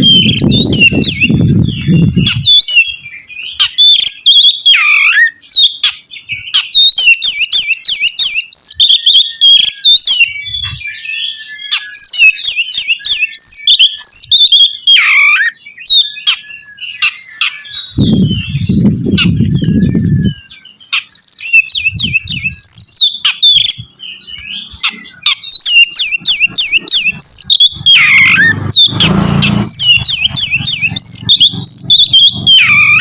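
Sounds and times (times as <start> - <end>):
low rumbling noise: 0.0 - 3.2, 17.8 - 20.5, 26.2 - 33.0
bird singing sharp chirps: 0.0 - 33.0.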